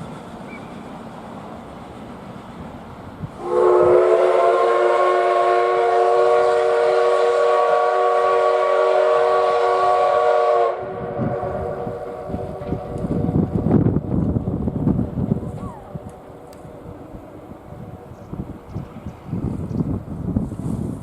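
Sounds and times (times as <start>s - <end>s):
steam locomotive whistle blast: 3.4s - 13.1s.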